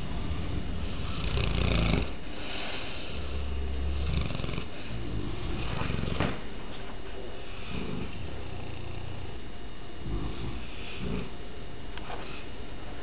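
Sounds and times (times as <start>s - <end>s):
breathy hissing: 0.0s - 6.3s
dogs snoring deeply: 0.0s - 6.5s, 7.4s - 11.4s.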